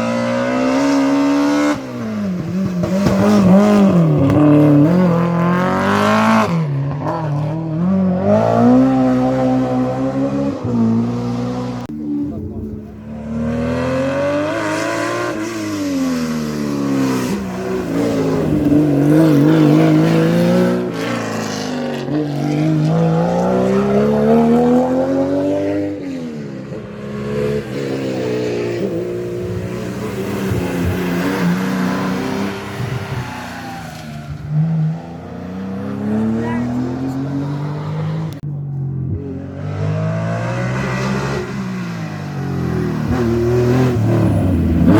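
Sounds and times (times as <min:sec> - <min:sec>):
car engine revving hard: 0:13.2 - 0:26.3, 0:34.4 - 0:38.4, 0:39.4 - 0:44.9.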